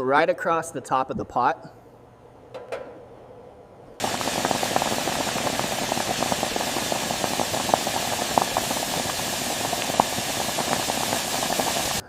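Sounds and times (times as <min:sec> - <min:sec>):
water boiling and bubbling: 0:04.0 - 0:12.0.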